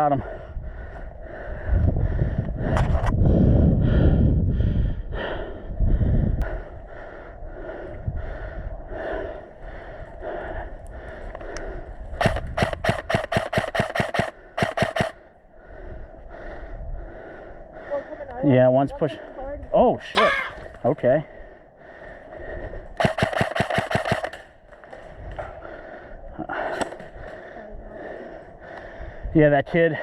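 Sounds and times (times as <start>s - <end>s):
heavy breathing: 0.0s - 19.6s, 20.2s - 24.1s, 24.9s - 30.0s
airsoft rifle shots: 12.2s - 15.2s, 23.0s - 24.5s.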